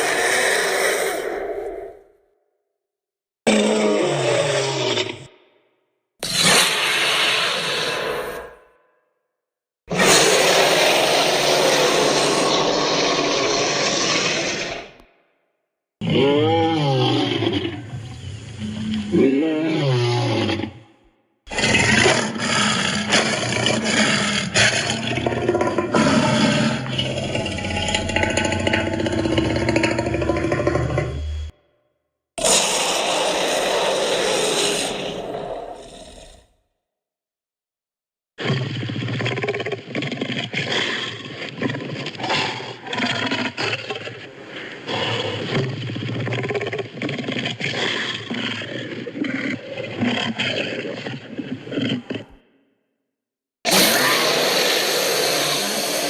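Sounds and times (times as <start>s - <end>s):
monster roar: 0.0s - 2.0s, 3.5s - 5.3s, 9.9s - 15.0s, 16.0s - 20.9s, 21.5s - 31.5s, 32.4s - 36.5s, 53.7s - 56.0s
harsh rasping growl: 9.9s - 15.0s, 21.5s - 31.6s, 32.4s - 36.6s.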